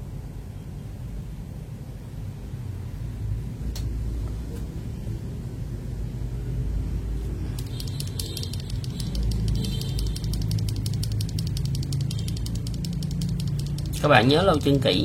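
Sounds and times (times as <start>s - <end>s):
steady low rumble: 1.8s - 15.0s
keyboard switches clicking: 7.6s - 15.0s.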